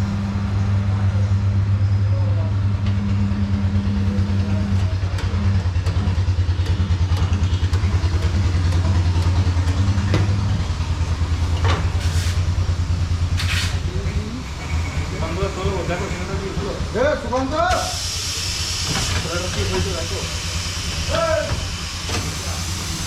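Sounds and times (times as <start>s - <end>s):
air compressor pulsing hum: 0.0s - 23.0s
air hiss blasts: 17.7s - 23.0s.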